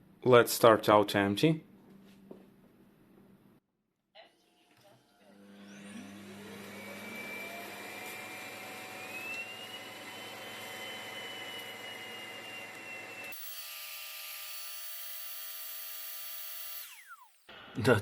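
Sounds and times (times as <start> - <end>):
vacuum dock suction motor whir: 4.8 - 17.8.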